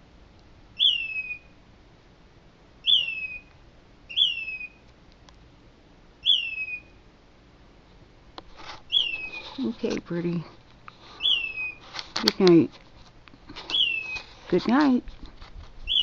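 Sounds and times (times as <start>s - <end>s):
bird whistled calls: 0.8s - 1.6s, 2.8s - 3.5s, 4.1s - 4.8s, 6.2s - 7.0s, 8.9s - 9.5s, 11.2s - 11.8s, 13.7s - 14.2s.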